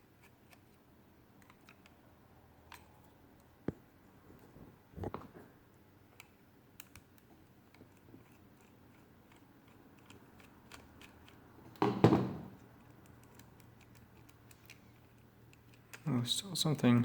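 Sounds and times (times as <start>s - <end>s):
screwdriver clicking on plastic: 6.2s - 11.8s
knock and rattle: 11.8s - 12.5s.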